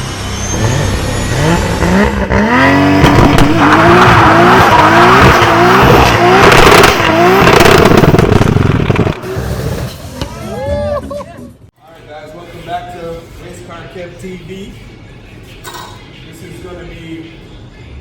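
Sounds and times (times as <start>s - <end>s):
car engine revving: 0.0s - 10.3s
tyre squeal: 0.2s - 1.6s.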